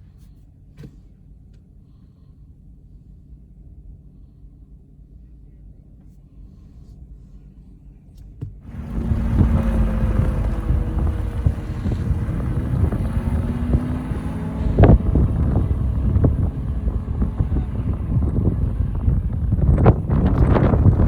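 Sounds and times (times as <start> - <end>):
wind buffeting microphone: 8.7 - 21.0.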